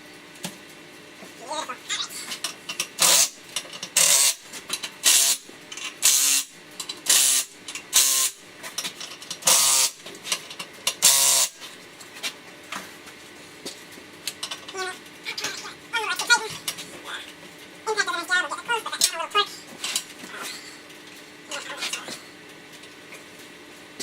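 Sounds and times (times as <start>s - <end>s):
power tool motor bursts: 3.0s - 3.4s, 4.0s - 8.4s, 9.4s - 10.0s, 11.0s - 11.6s.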